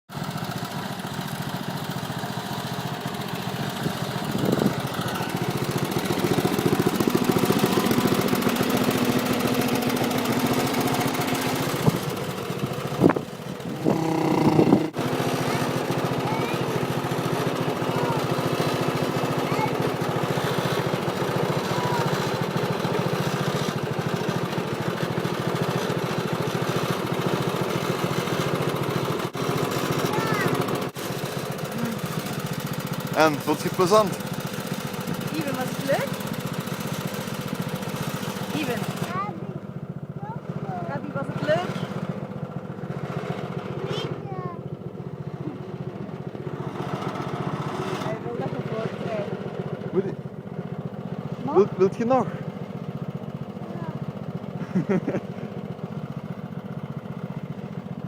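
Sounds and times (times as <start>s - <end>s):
small tractor engine running: 0.1s - 58.0s
person shouting: 13.7s - 15.0s.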